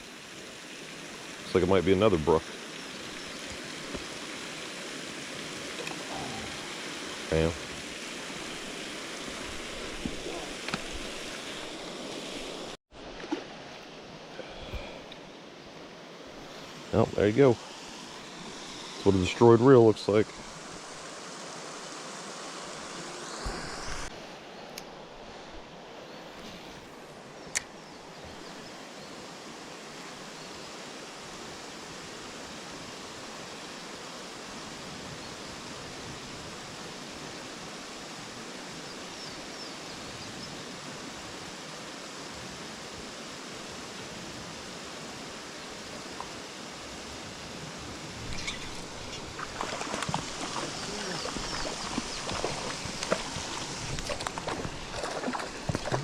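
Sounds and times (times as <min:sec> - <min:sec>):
river water running: 0:00.0 - 0:56.0
uneven splashing water: 0:48.3 - 0:56.0.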